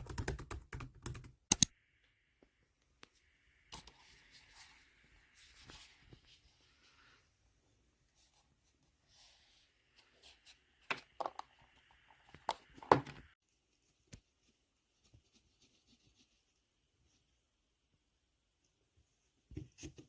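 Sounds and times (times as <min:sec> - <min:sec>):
sharp clicks and knocks: 0:01.5 - 0:01.7.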